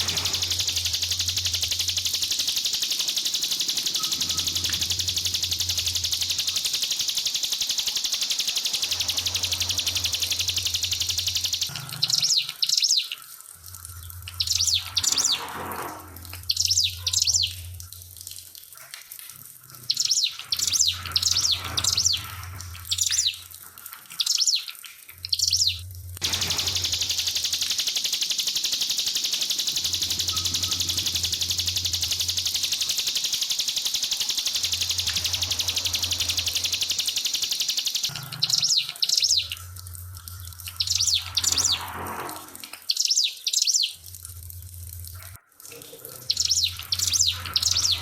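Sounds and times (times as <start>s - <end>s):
low hum: 0.0s - 11.7s, 25.8s - 38.1s
bird chattering song: 0.0s - 13.2s, 14.2s - 15.5s, 16.4s - 17.6s, 19.8s - 23.4s, 24.2s - 24.7s, 25.3s - 39.6s, 40.6s - 42.0s, 42.9s - 44.0s, 46.2s - 48.0s
trickling water: 0.0s - 48.0s.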